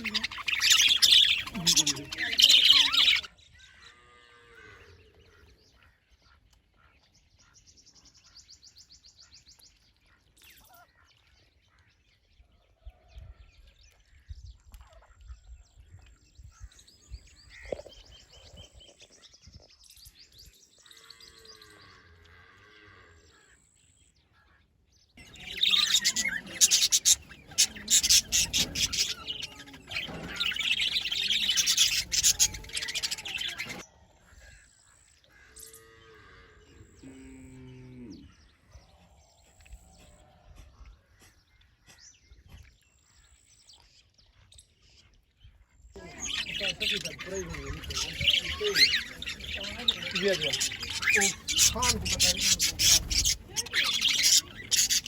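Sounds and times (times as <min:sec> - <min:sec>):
bird trill: 0:00.0 - 0:03.5, 0:25.2 - 0:33.8, 0:46.0 - 0:55.0
birds chirping: 0:00.0 - 0:55.0.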